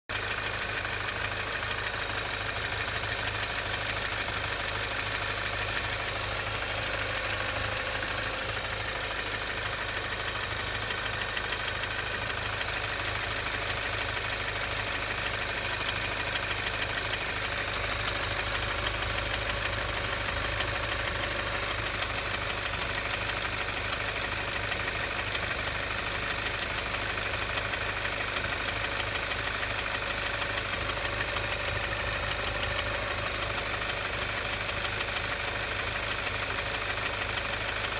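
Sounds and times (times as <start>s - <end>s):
car engine idling: 0.1s - 37.9s
engine knock: 0.1s - 37.9s.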